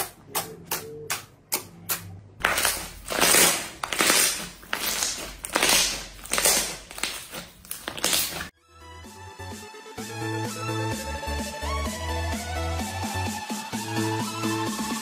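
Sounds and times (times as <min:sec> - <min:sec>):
slime crackling squelches: 0:02.4 - 0:08.5.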